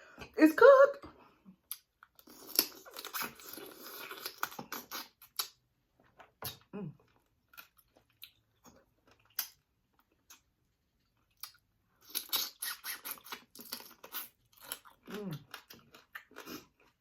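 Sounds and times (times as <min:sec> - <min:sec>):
chewing and smacking: 0:01.6 - 0:17.0
wet mouth clicks: 0:11.4 - 0:13.5.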